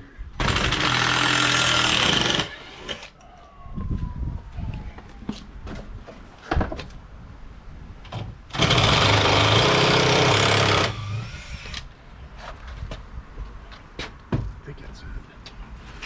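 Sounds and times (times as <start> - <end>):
power drill backing out screw: 0.4 - 3.2, 8.5 - 11.9.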